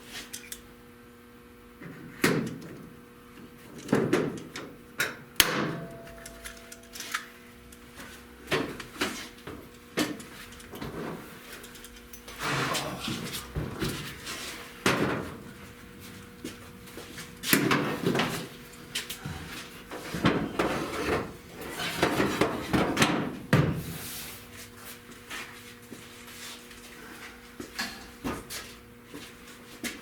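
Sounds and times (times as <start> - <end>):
tools and parts clunking: 3.7 - 12.4
faint steady hum: 4.4 - 30.0.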